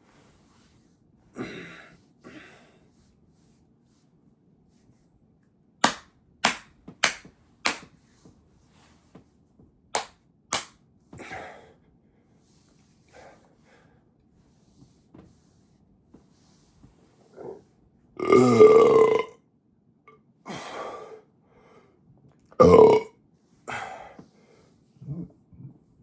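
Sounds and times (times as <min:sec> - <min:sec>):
sharp slaps: 0:05.8 - 0:08.0, 0:10.0 - 0:10.8.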